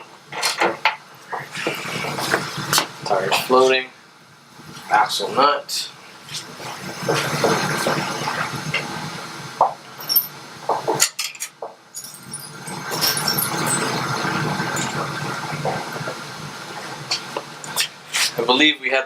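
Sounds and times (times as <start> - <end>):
metal tools clinking: 11.2 - 15.0.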